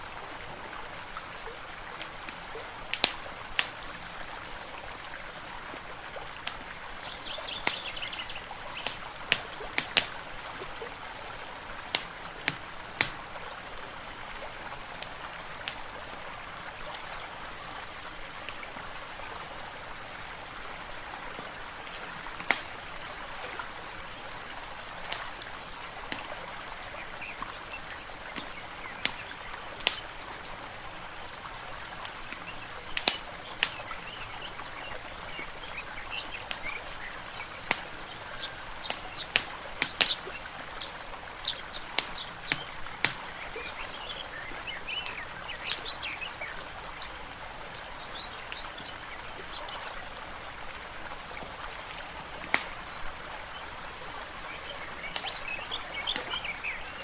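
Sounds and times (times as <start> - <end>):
water trickling: 0.0 - 57.0
birds chirping: 6.6 - 10.1, 21.5 - 30.4, 32.4 - 50.2, 52.8 - 57.0
wood fire crackling: 11.8 - 13.3, 21.9 - 22.8, 51.9 - 52.8.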